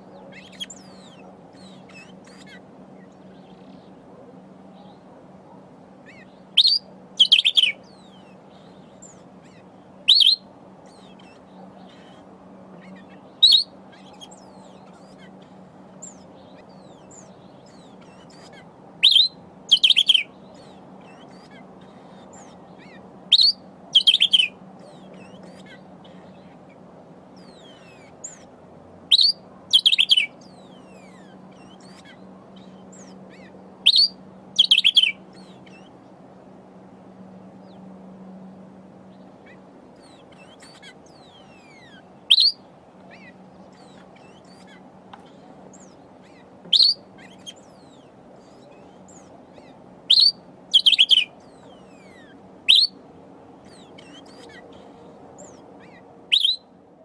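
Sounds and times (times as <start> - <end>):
bird calling sharply: 6.1 - 7.8, 10.1 - 10.4, 12.9 - 15.4, 18.1 - 20.3, 22.3 - 24.6, 29.1 - 30.4, 33.8 - 35.2, 40.5 - 48.0, 50.1 - 51.4, 52.0 - 53.0, 53.8 - 56.7.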